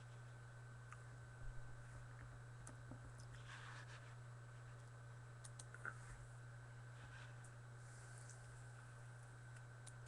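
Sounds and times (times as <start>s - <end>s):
low electrical hum: 0.0s - 10.0s
thin steady whine: 0.0s - 10.0s.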